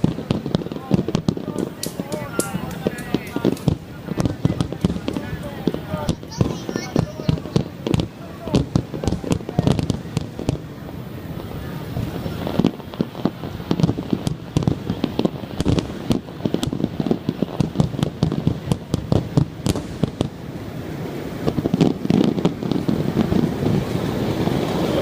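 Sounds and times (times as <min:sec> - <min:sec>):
fireworks bangs and crackles: 0:00.0 - 0:25.0
low fireworks booms: 0:00.0 - 0:25.0.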